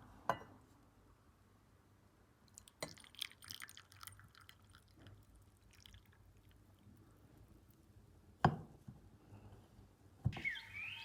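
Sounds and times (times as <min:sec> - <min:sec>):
liquid pouring into a glass: 0:02.5 - 0:07.0.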